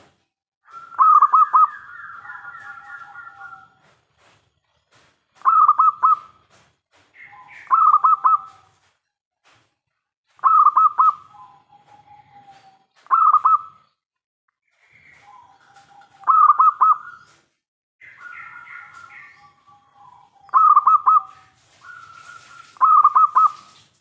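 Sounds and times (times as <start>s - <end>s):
dove cooing: 0.7s - 3.8s, 5.4s - 6.4s, 7.3s - 8.8s, 10.4s - 13.8s, 15.0s - 17.4s, 18.0s - 23.7s.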